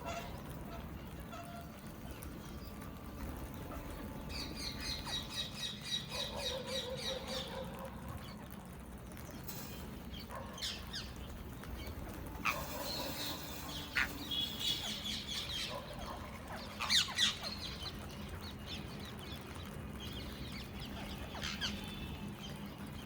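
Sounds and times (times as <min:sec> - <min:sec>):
parakeets chattering: 0:10.6 - 0:18.4.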